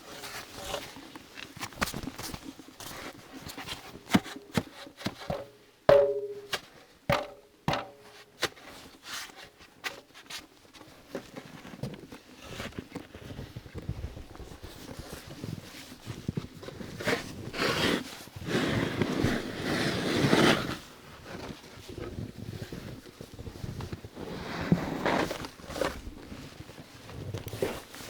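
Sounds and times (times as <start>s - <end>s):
sharp handling knocks and clicks: 4.1s - 8.1s
soft rustling: 8.1s - 28.0s.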